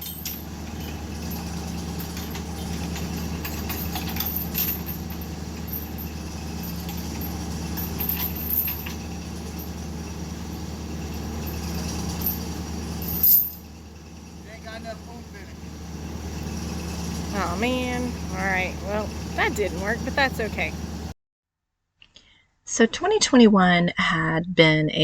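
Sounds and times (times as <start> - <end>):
sharp metal clanks: 0.0 - 13.7
loader engine straining: 0.0 - 21.2.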